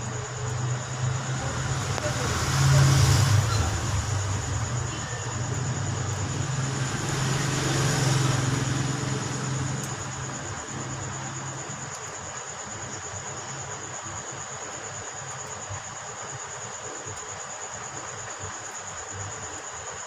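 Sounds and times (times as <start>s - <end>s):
low engine-like hum: 0.0s - 13.6s.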